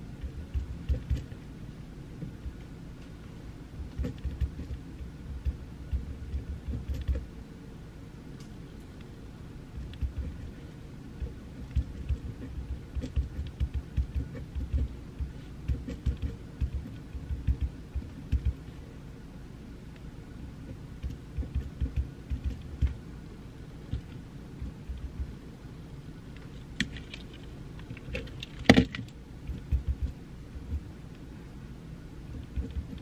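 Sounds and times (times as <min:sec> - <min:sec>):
low background hum: 0:00.0 - 0:33.0
pencil writing on paper: 0:03.9 - 0:04.8, 0:11.2 - 0:18.6.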